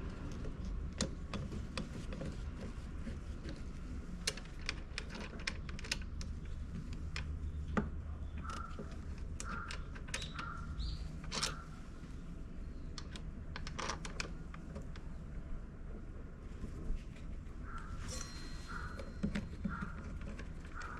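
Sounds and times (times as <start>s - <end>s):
low steady hum: 0.0s - 20.9s
small tools clicking and tapping: 3.4s - 10.6s, 18.1s - 20.9s.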